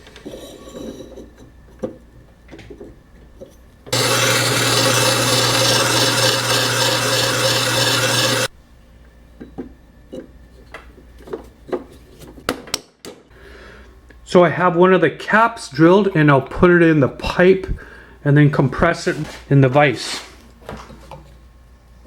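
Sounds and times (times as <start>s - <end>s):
power tool cutting: 4.0s - 8.5s.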